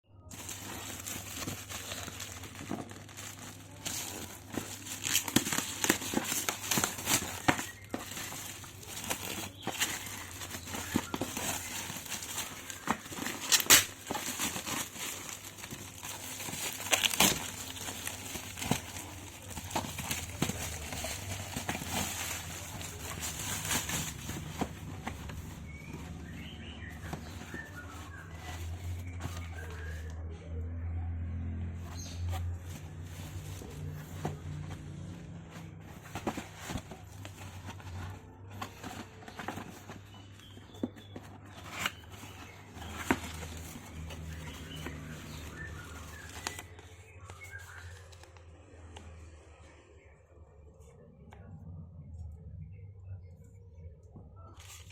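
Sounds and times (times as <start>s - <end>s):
cardboard and wrapping rustling: 0.2s - 49.4s, 53.0s - 54.9s.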